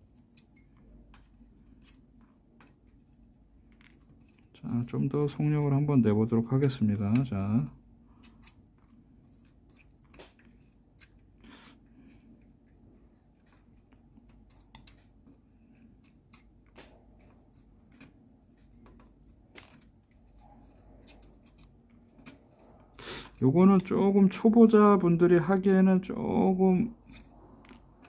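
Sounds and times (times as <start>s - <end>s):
small metallic clicks: 13.4s - 23.9s.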